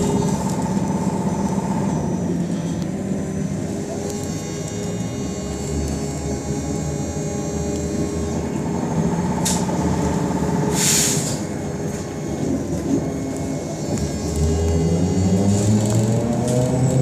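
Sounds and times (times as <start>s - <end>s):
trolleybus rumble and whine: 0.0s - 17.0s
short air hisses: 10.7s - 11.4s.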